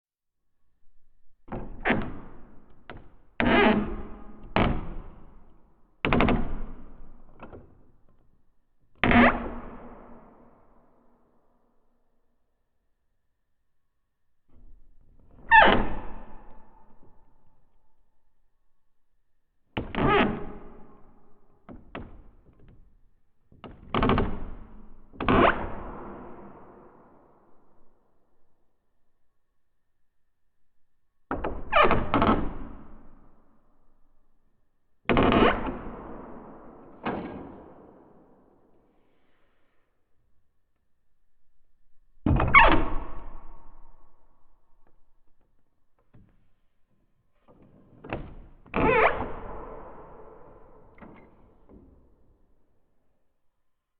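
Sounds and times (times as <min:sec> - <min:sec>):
wooden door creaking: 0:01.5 - 0:10.8, 0:14.5 - 0:17.8, 0:19.8 - 0:26.9, 0:35.0 - 0:38.3, 0:44.6 - 0:52.6.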